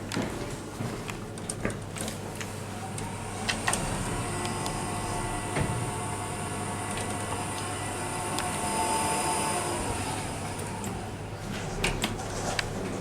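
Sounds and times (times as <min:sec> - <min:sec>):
lift whine as car travels: 0:02.9 - 0:11.3.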